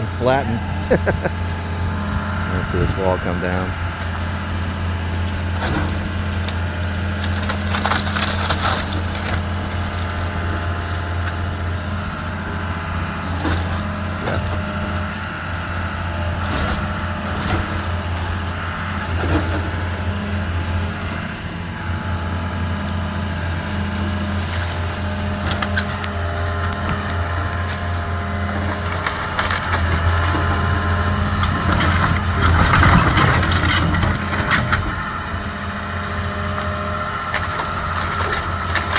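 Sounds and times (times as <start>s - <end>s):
demolition machine engine: 0.0s - 38.9s
timber cracking and splintering: 7.2s - 10.2s.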